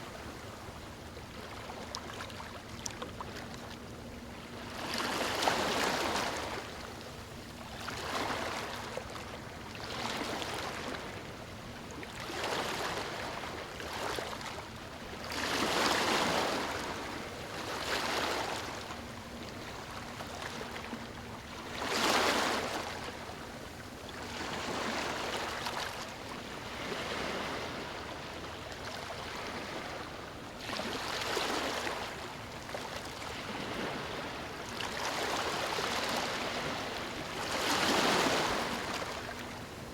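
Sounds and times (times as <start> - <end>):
ocean waves breaking on beach: 4.5 - 6.8, 15.2 - 18.8, 24.3 - 28.4, 29.0 - 39.9.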